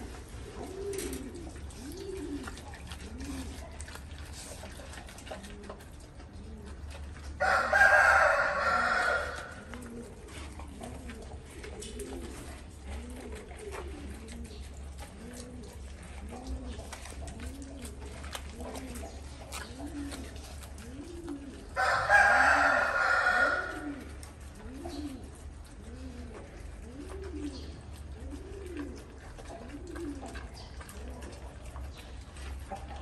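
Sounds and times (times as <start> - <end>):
dove cooing: 0.0 - 33.0.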